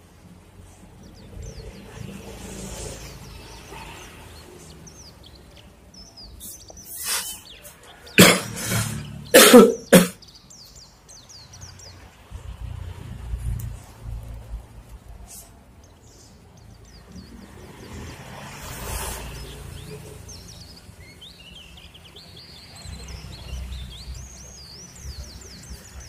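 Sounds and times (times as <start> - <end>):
small birds chirping: 0.0 - 26.0
person coughing: 8.2 - 8.7, 9.4 - 10.2.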